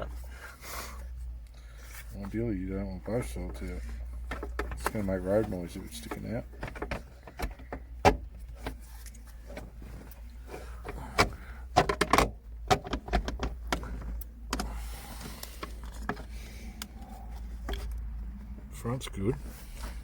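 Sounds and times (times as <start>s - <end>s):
rubber boot clicking and rubbing: 3.5s - 18.7s.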